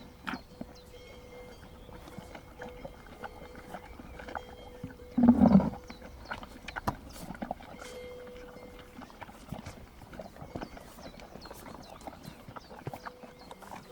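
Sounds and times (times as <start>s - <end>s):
horse low vocal sound: 2.2s - 10.3s.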